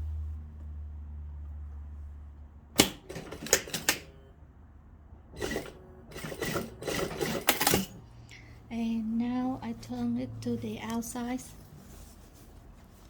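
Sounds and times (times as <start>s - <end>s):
fabric rustling: 11.3s - 13.0s.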